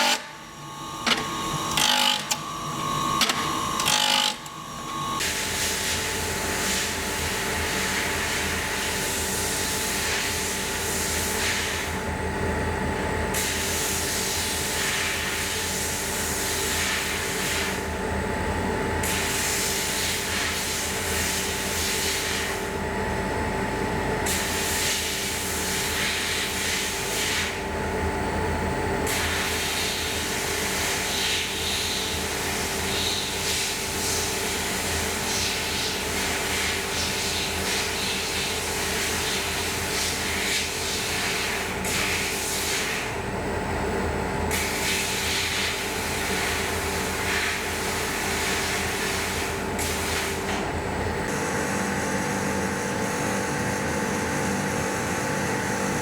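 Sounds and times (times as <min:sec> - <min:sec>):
electric sander humming: 0:00.0 - 0:05.2.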